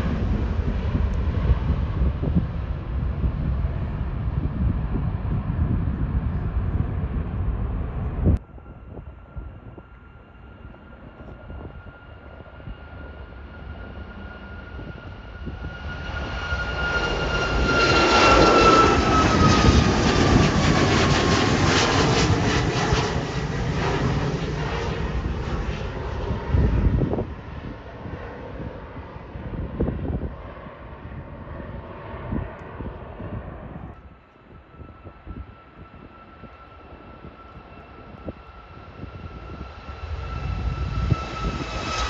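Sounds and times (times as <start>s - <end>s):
jet airliner passing: 0.0s - 42.0s.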